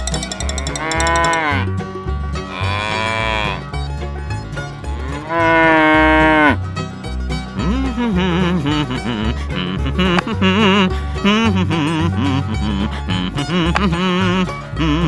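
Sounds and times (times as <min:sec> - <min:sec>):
country music with steady beat: 0:00.0 - 0:15.0
cattle mooing: 0:00.2 - 0:01.7, 0:02.4 - 0:03.7, 0:04.9 - 0:06.6.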